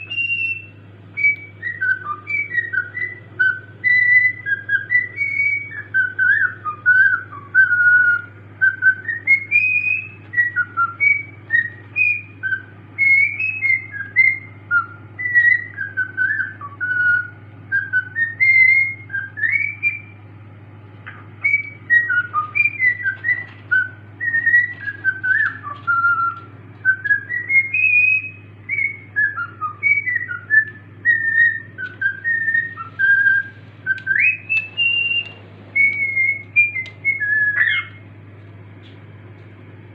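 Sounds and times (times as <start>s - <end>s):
cockatiel whistling a tune: 0.0s - 20.2s, 21.1s - 38.0s
steady low hum: 0.0s - 39.9s.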